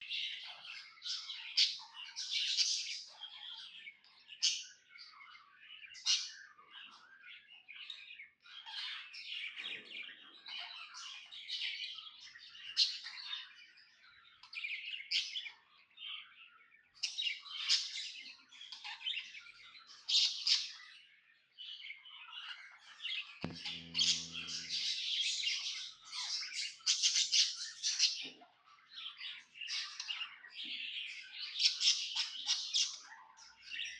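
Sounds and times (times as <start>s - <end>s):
low hum: 23.4s - 25.0s.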